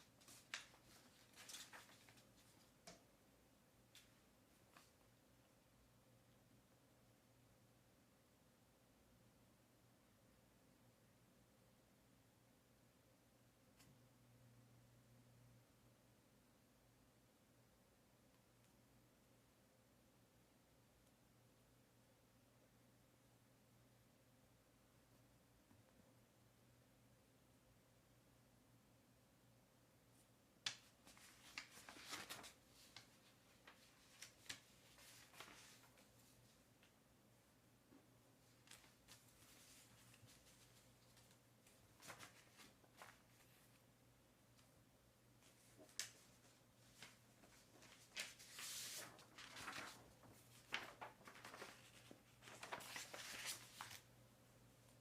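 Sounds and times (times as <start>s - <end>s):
rustling: 0.0s - 2.9s, 31.0s - 36.6s, 45.4s - 54.1s.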